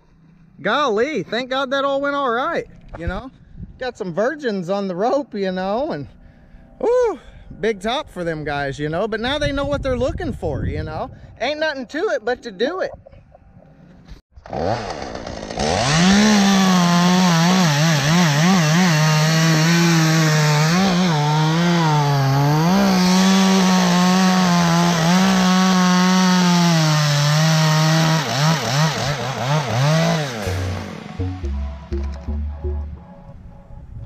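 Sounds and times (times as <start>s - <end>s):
chainsaw cutting wood: 14.4s - 32.4s.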